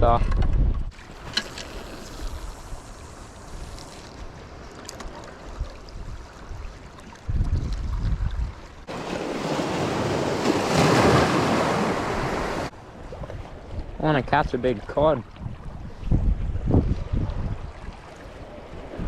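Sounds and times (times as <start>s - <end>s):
wind buffeting microphone: 0.0s - 3.8s, 5.5s - 14.5s, 15.2s - 19.0s
surf washing against rocks: 8.8s - 12.8s.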